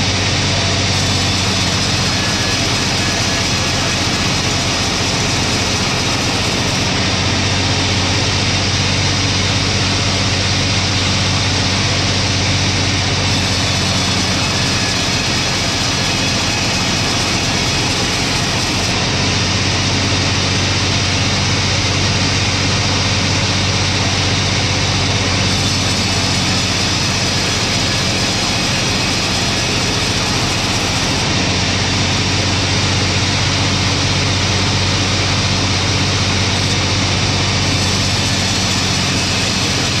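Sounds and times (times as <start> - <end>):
log saw engine hum: 0.0 - 40.0
saw cutting hiss: 0.8 - 7.0, 13.3 - 19.0, 25.5 - 31.4, 37.5 - 40.0.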